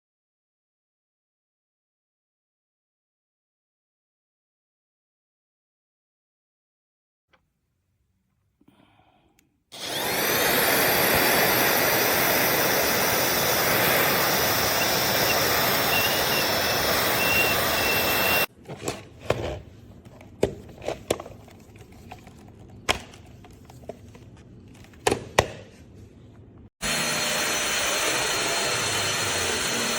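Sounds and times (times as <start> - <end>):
stick vacuum cleaner running: 9.7 - 18.5, 26.8 - 29.9.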